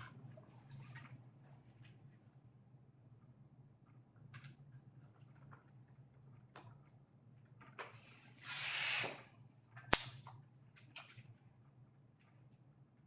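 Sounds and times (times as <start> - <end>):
air hissing into inner tube: 7.9 - 9.3
sharp click: 9.8 - 10.4.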